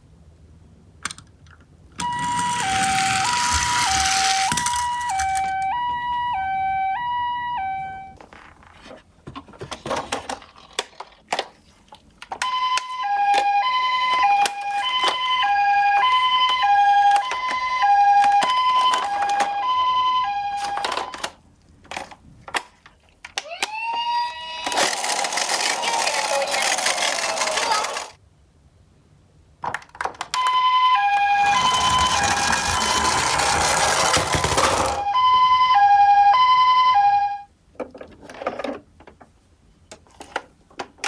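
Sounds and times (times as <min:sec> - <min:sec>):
electronic two-tone toy siren: 0:02.0 - 0:08.2, 0:12.4 - 0:21.3, 0:23.4 - 0:28.1, 0:30.4 - 0:37.5
wailing siren rising in pitch: 0:02.0 - 0:08.2, 0:12.5 - 0:20.9, 0:23.5 - 0:27.6, 0:30.5 - 0:37.4.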